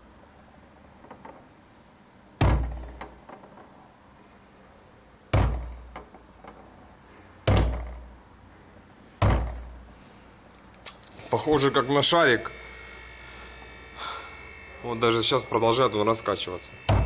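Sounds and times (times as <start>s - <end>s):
hollow thud on fuel tank: 2.4s - 3.2s, 5.3s - 6.1s, 7.4s - 8.1s, 9.2s - 9.9s.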